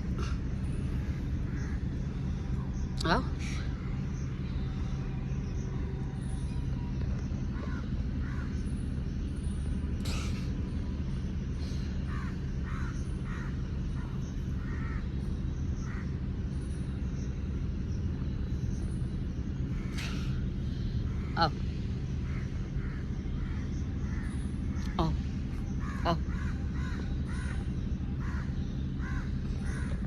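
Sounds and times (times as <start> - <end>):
steady low rumble: 0.0 - 30.0
crow cawing: 7.6 - 8.6, 12.1 - 15.1, 25.8 - 30.0.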